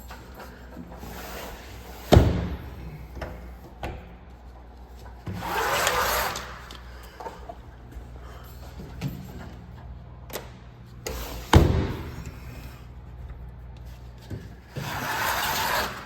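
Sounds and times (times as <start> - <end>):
sliding window rubbing in track: 5.3 - 6.7, 14.0 - 16.0.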